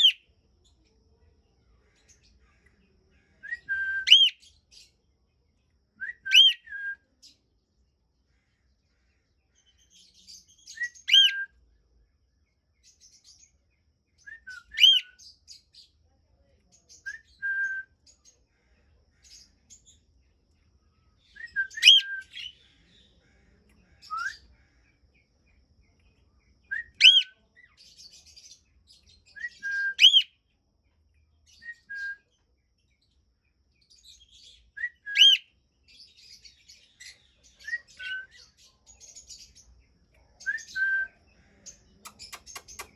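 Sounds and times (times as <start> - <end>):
cockatiel whistled call: 3.5 - 4.4, 6.0 - 7.0, 10.8 - 11.5, 14.3 - 15.2, 21.4 - 22.4, 26.7 - 27.3, 29.4 - 30.3, 34.8 - 35.5
faint high twittering: 35.9 - 42.9.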